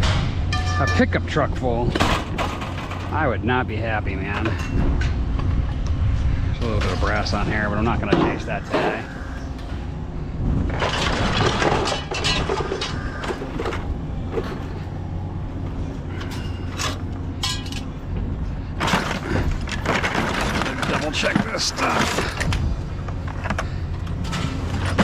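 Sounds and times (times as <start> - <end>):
steady low rumble: 0.0 - 25.0
scrap metal clanking: 1.8 - 5.2, 10.7 - 15.0, 16.0 - 25.0.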